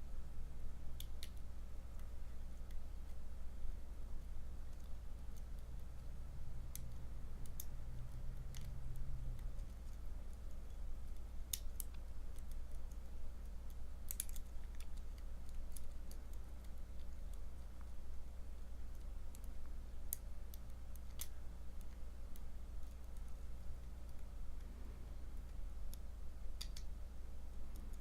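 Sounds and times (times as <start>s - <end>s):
low hum: 21.4s - 28.0s.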